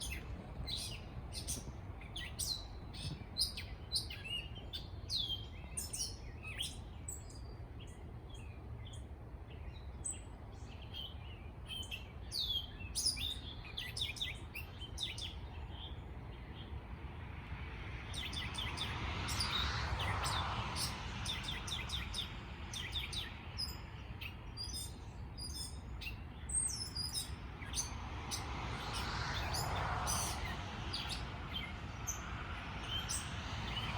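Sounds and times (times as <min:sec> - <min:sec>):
small birds chirping: 0:18.1 - 0:33.9
broad rushing noise: 0:27.4 - 0:33.9.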